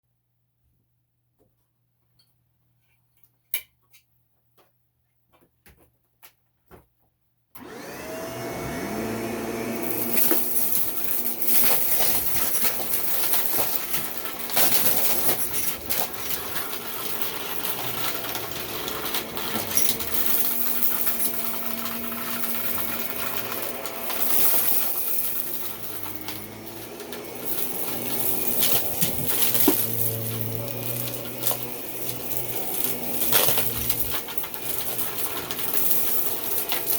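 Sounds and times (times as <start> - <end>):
vacuum cleaner motor whining: 7.6 - 36.9.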